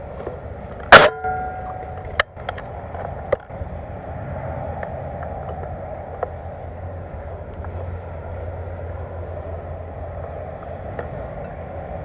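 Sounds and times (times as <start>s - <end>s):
wind rumble on microphone: 0.0s - 12.0s
distant airsoft gunfire: 1.0s - 1.6s.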